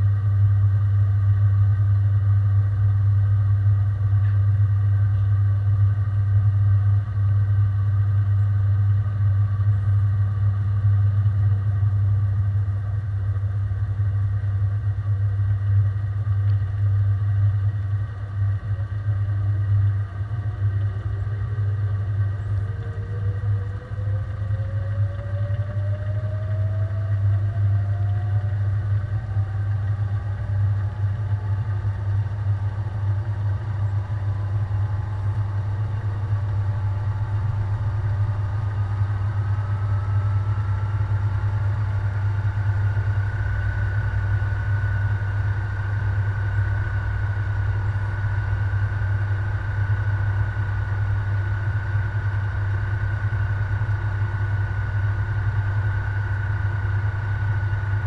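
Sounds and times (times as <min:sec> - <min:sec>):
washing machine motor whine: 0:00.0 - 0:58.0
low drone: 0:02.3 - 0:58.0.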